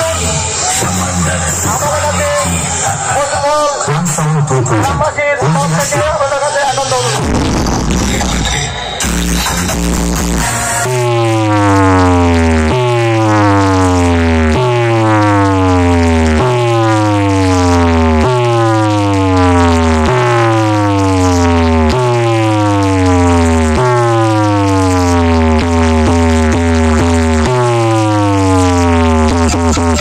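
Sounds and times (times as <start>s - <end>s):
deep bass: 0.0s - 30.0s
falling electronic tone sweep: 10.8s - 30.0s.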